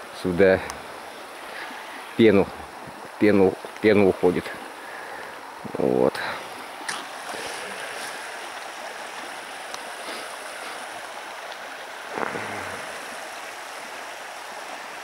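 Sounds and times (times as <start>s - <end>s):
river rushing over rocks: 6.4s - 15.0s.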